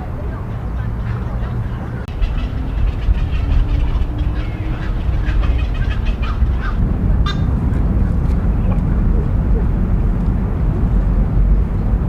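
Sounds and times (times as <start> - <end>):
low rumble: 0.0 - 12.0
water birds calling: 0.3 - 9.7.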